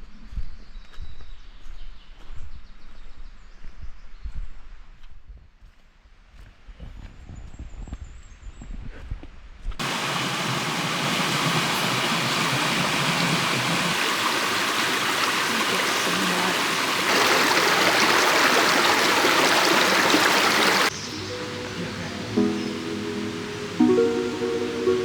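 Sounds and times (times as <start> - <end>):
stream rushing: 9.8 - 25.0.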